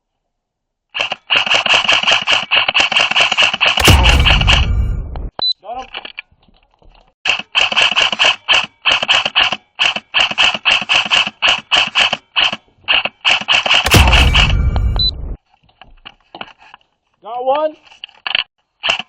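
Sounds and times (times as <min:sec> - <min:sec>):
airsoft rifle firing bursts: 0:01.0 - 0:04.6, 0:07.3 - 0:14.6.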